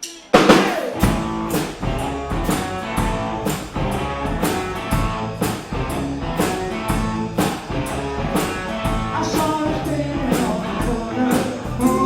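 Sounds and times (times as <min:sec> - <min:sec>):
rock band instrumental: 0:00.3 - 0:12.0.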